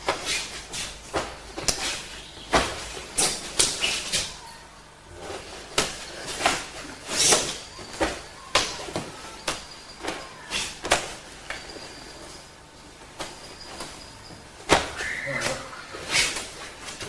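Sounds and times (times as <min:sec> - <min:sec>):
hands and forearms slapping: 0:00.0 - 0:04.4.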